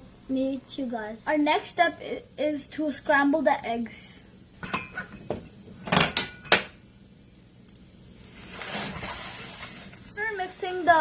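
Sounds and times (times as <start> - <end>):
eggs sizzling in oil: 0.0 - 11.0
utensil scraping a frying pan: 8.3 - 11.0.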